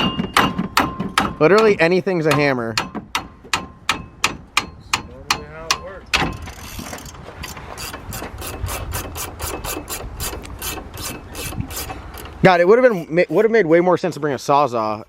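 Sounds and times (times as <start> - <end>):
ratchet wrench clicking: 5.7 - 7.2.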